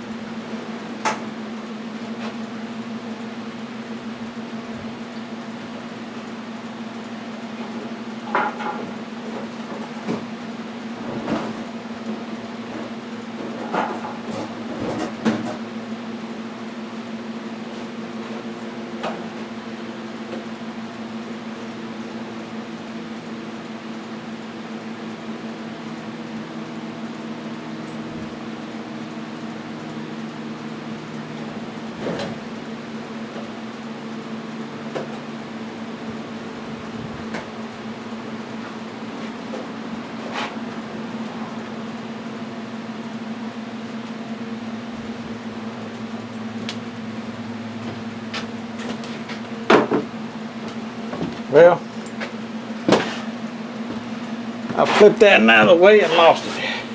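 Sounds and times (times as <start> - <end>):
steady low hum: 0.0 - 56.9
knocks and clanks: 51.1 - 53.3.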